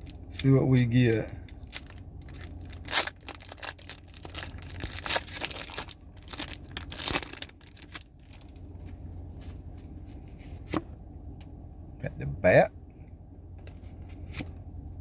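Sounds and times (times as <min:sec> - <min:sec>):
card pack wrappers tearing and crinkling: 0:00.0 - 0:08.6.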